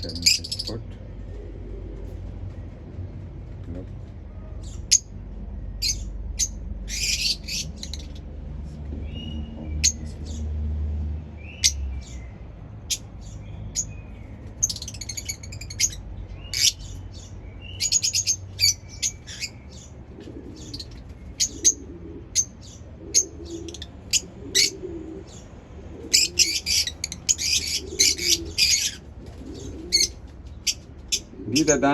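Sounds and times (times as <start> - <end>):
lovebirds chirping: 0.0 - 1.3, 5.7 - 8.3, 11.4 - 31.9.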